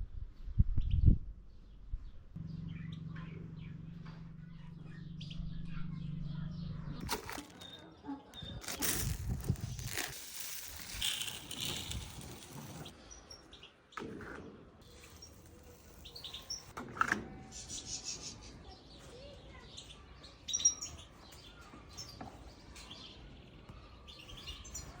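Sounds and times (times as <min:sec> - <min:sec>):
small birds chirping: 0:00.8 - 0:14.1, 0:14.8 - 0:16.8, 0:17.5 - 0:25.0
rustling: 0:07.0 - 0:07.8, 0:08.4 - 0:12.9.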